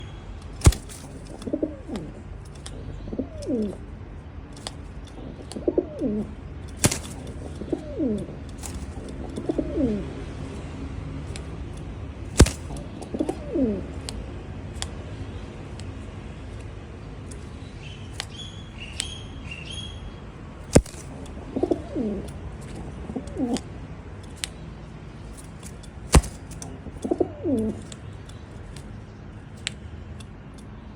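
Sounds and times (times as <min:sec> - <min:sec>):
sharp knocks: 0:00.6 - 0:01.2, 0:06.8 - 0:07.4, 0:12.4 - 0:12.8, 0:20.8 - 0:21.1, 0:25.6 - 0:26.6
pigeon cooing: 0:00.6 - 0:03.9, 0:05.2 - 0:10.5, 0:12.4 - 0:14.0, 0:20.8 - 0:23.7, 0:27.0 - 0:27.9.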